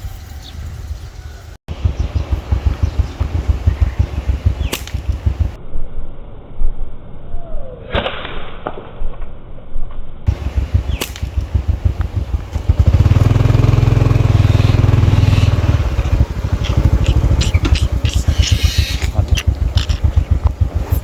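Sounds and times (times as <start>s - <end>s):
small engine running: 1.7s - 5.6s, 10.3s - 21.0s
sharp snap: 3.0s - 5.6s, 7.9s - 8.9s, 10.3s - 13.3s.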